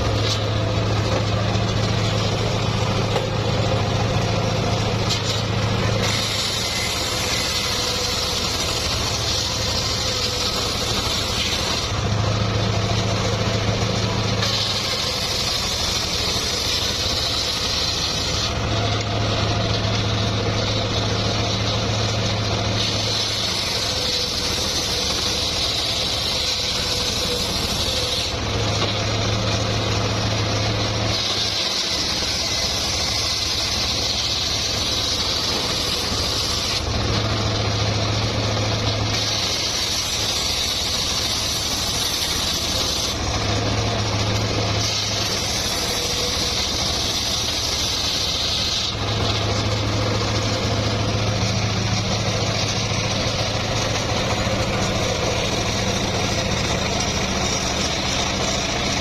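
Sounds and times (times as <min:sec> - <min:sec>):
sawmill engine humming: 0:00.0 - 0:59.0.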